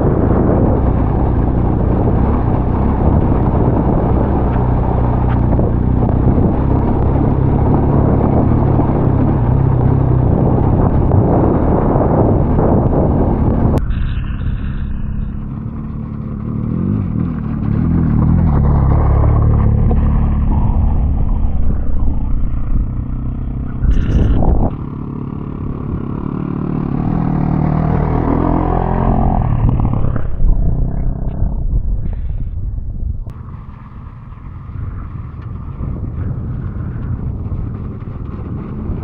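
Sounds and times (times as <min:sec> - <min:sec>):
loud clatter: 0:00.0 - 0:26.9
motorcycle engine under load: 0:00.0 - 0:32.6, 0:33.3 - 0:39.0
wind and road noise: 0:00.0 - 0:39.0.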